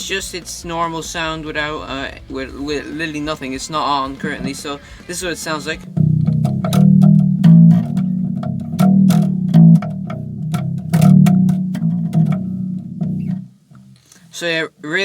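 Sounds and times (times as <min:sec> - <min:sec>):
clean electric bass guitar notes: 0:00.0 - 0:14.0.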